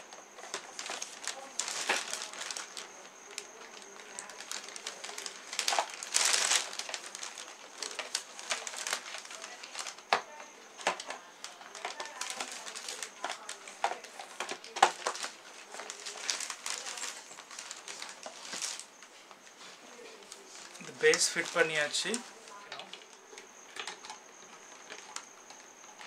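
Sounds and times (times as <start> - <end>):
rustling: 0.0 - 26.0
plastic parts clicking and knocking: 3.7 - 18.8.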